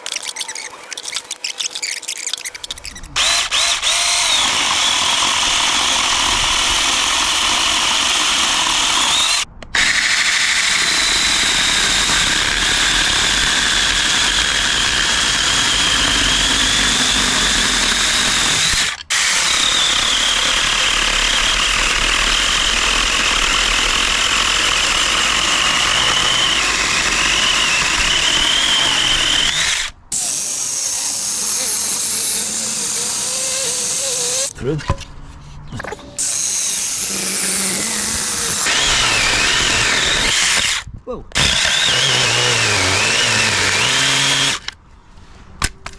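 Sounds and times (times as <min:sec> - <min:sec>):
mini chainsaw whining: 0:10.9 - 0:34.5, 0:35.9 - 0:44.7.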